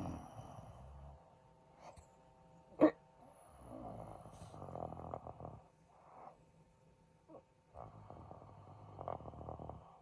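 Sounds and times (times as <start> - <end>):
man snoring: 0.0 - 0.8, 7.8 - 10.0.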